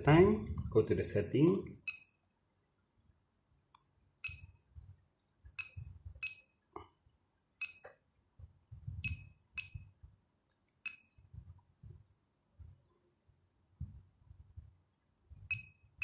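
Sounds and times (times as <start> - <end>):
short electronic beeps: 1.8 - 2.2, 4.2 - 4.6, 5.6 - 6.6, 7.6 - 7.9, 9.0 - 9.9, 10.8 - 11.2, 15.5 - 15.8.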